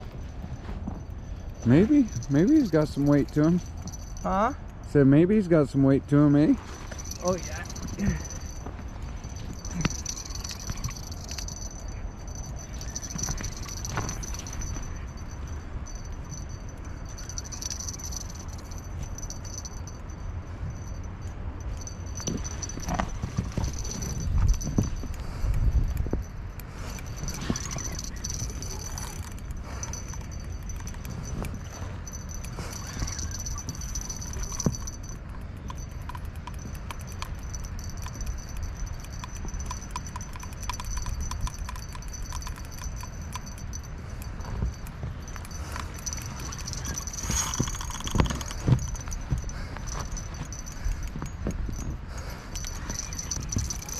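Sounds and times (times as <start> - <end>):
steady low rumble: 0.0 - 53.9
wind buffeting microphone: 0.0 - 53.9
faint high-pitched rattling: 20.8 - 53.9
light irregular clicks: 20.8 - 53.9.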